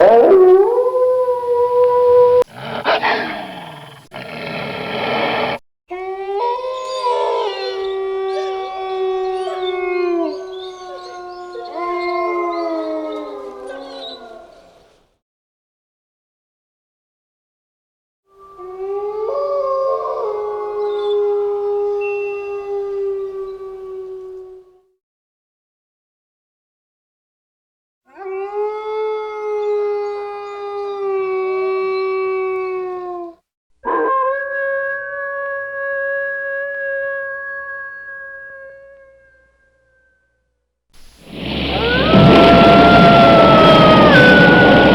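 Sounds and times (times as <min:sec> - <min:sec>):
wolves howling: 0:00.0 - 0:15.0, 0:18.4 - 0:24.8, 0:28.1 - 0:39.5, 0:41.3 - 0:44.9.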